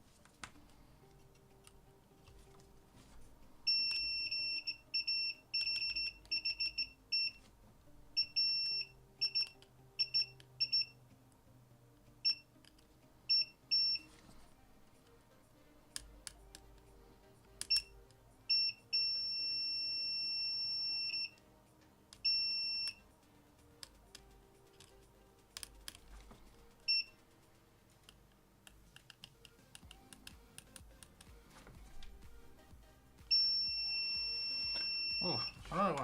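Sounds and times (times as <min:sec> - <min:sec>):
faint music: 0:00.0 - 0:36.0
multimeter continuity beeps: 0:03.6 - 0:07.4, 0:08.2 - 0:11.0, 0:12.2 - 0:12.5, 0:13.3 - 0:14.1, 0:17.6 - 0:21.4, 0:22.2 - 0:23.1, 0:26.8 - 0:27.2, 0:33.3 - 0:35.6.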